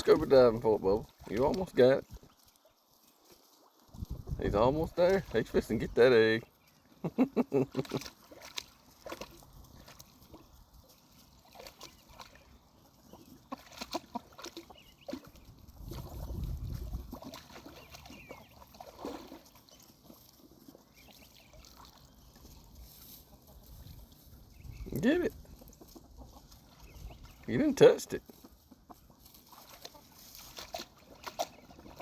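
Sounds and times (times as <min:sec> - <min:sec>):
dog splashing in water: 0:07.7 - 0:12.6, 0:13.3 - 0:22.5, 0:29.4 - 0:32.0.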